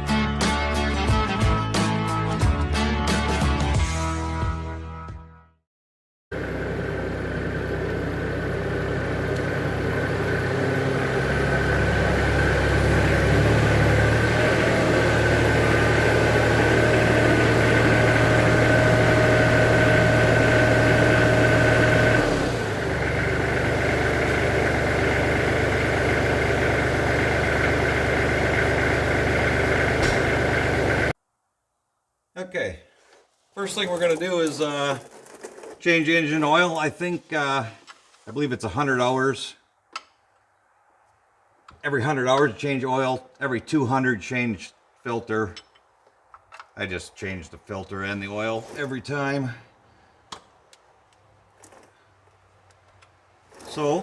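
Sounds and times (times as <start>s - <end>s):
diesel tractor engine running: 6.3s - 31.2s.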